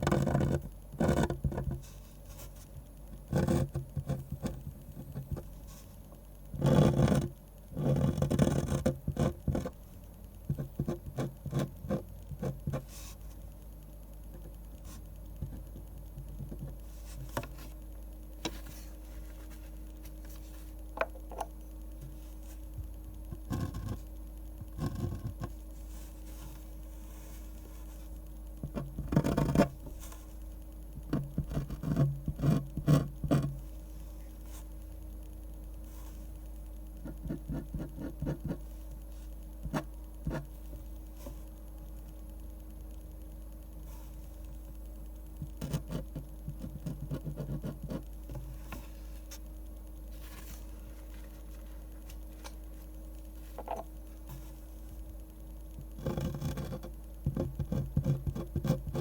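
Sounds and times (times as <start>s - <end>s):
pen scratching on paper: 0.0s - 2.5s, 3.2s - 5.4s, 6.6s - 9.8s, 10.5s - 13.2s, 23.4s - 24.1s, 28.6s - 30.2s, 31.1s - 33.5s, 37.0s - 38.7s, 45.6s - 48.0s, 56.0s - 59.0s
faint steady hum: 0.0s - 59.0s.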